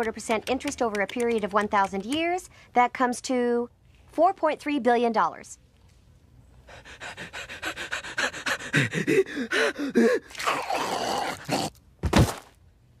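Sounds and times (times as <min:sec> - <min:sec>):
man panting and gasping: 0:06.6 - 0:10.5.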